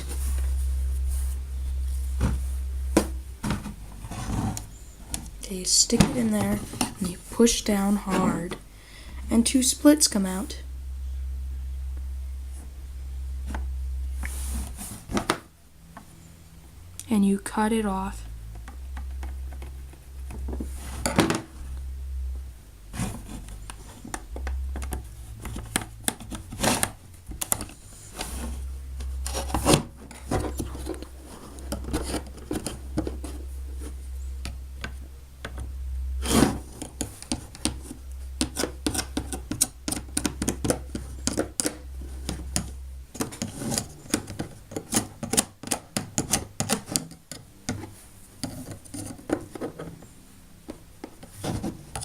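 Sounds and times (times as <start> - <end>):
plastic tools clicking and tapping: 38.4 - 50.0.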